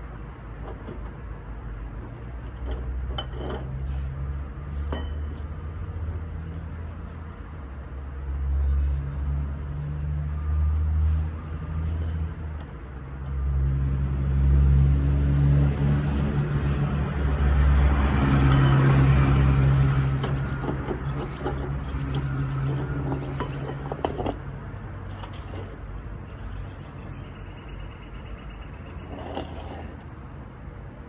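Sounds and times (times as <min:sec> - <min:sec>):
vehicle engine humming: 0:11.0 - 0:31.0.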